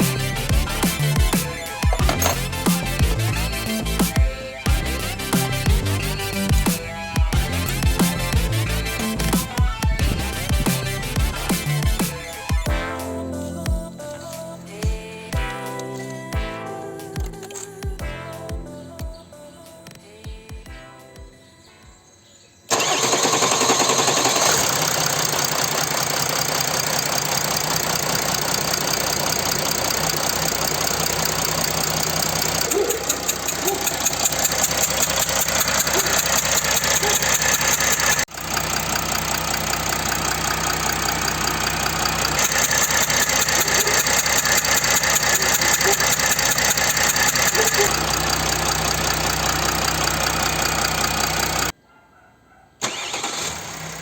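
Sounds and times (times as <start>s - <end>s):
diesel engine idling: 22.7s - 51.7s, 52.8s - 54.0s.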